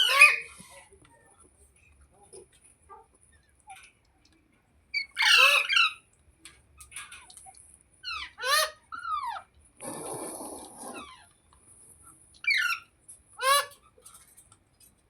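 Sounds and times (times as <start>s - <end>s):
parrot squawking: 0.0s - 0.5s, 5.0s - 6.0s.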